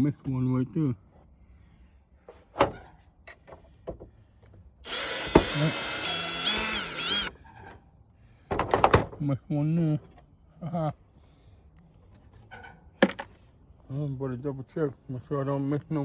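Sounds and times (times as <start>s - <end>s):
power drill whining: 4.8s - 7.4s.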